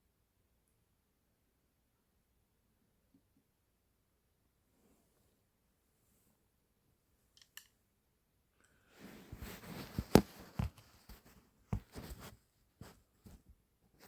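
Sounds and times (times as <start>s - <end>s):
rustling handling noise: 8.7s - 14.0s.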